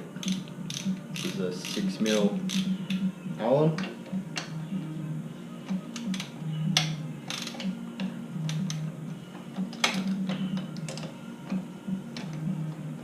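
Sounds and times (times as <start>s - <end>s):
background music: 0.0s - 13.0s
ratchet clicking: 0.2s - 2.7s, 7.3s - 7.7s.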